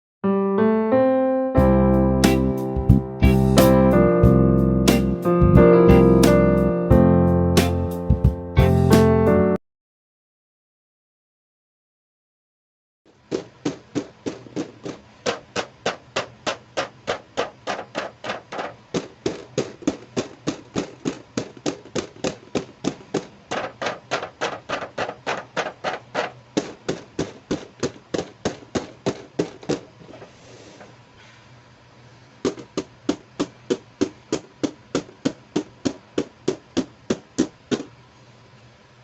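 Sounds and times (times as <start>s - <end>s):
fingers tapping on packaging: 13.3s - 29.9s, 32.4s - 37.9s.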